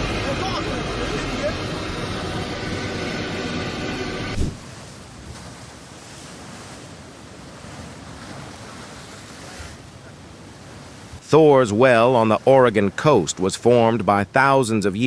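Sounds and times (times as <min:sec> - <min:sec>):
waves surging over rocks: 0:00.0 - 0:14.8
loud thump: 0:04.3 - 0:04.6.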